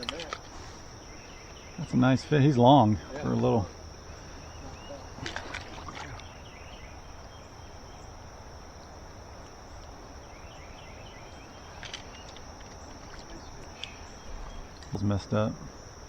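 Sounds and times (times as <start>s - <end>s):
crickets chirping: 0.0s - 16.0s
faint clicks: 11.7s - 14.1s.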